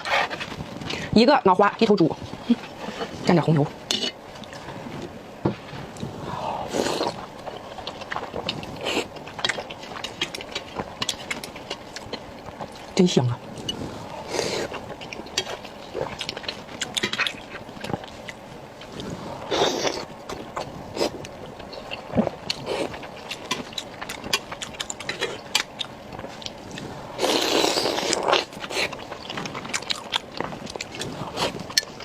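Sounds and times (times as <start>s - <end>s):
wet chewing and lip-smacking: 6.8s - 13.8s, 14.6s - 32.0s.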